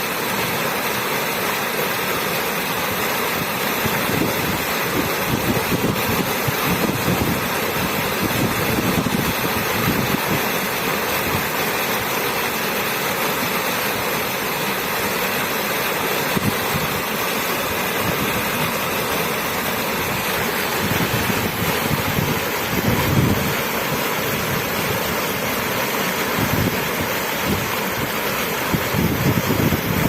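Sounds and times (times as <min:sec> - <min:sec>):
waterfall rushing: 0:00.0 - 0:30.0.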